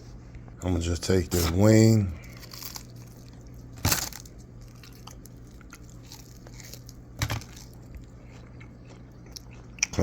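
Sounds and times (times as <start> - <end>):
crunch of biting fried chicken: 2.3 - 10.0.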